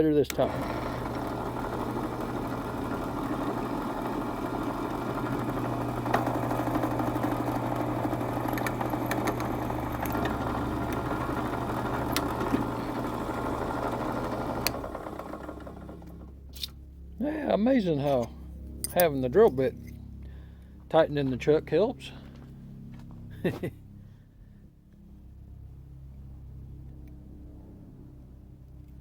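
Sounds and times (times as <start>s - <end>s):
drill press motor humming: 0.2s - 16.4s
drill bit cutting metal: 0.3s - 15.9s.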